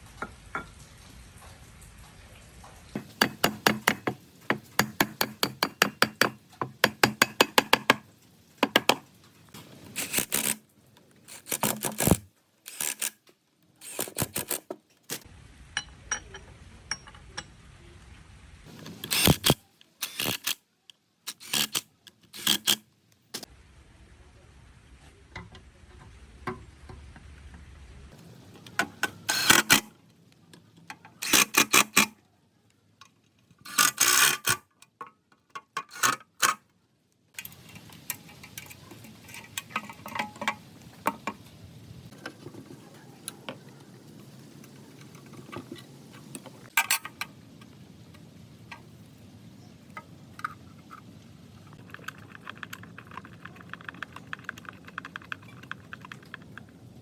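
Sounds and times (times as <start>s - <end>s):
knocks and taps on metal: 3.0s - 9.1s
sharp metallic clicks: 19.0s - 20.6s, 28.6s - 29.9s, 31.2s - 32.1s.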